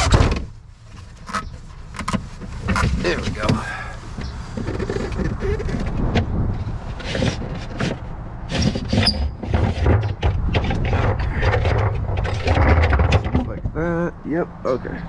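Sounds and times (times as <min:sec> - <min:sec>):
knocks and rattles of tire handling: 0:00.0 - 0:14.1
brief squeak: 0:08.6 - 0:09.4.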